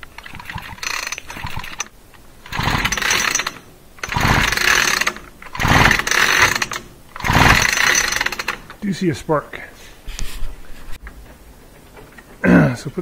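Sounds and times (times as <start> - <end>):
chainsaw recoil starter whirring: 0.0 - 8.8.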